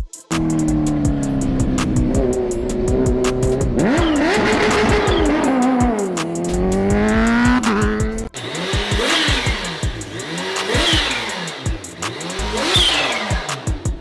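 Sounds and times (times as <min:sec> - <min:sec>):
background music: 0:00.0 - 0:14.0
motorcycle engine at speed: 0:00.3 - 0:14.0.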